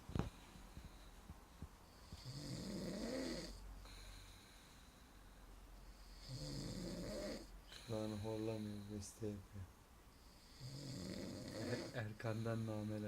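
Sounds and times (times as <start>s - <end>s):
man snoring: 2.0s - 3.6s, 6.1s - 9.3s, 10.3s - 13.0s.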